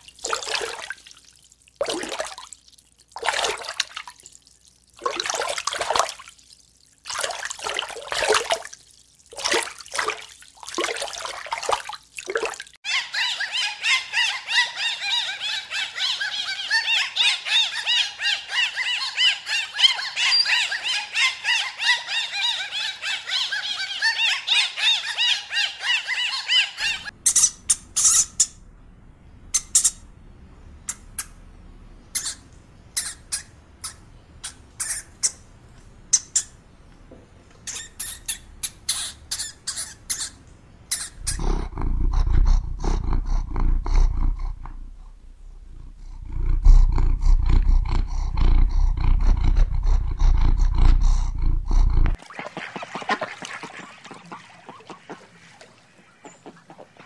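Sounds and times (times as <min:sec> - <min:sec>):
loud low animal rumbling: 0:41.2 - 0:52.2.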